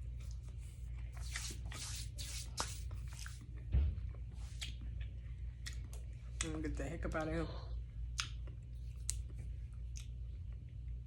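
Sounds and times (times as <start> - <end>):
steady low hum: 0.0 - 11.0
wet chewing and smacking: 0.1 - 6.6, 8.0 - 11.0
low thump: 3.7 - 4.2.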